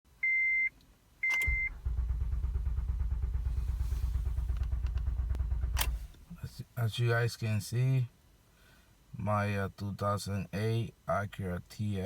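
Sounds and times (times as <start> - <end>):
car starter cranking engine: 1.2 - 6.4.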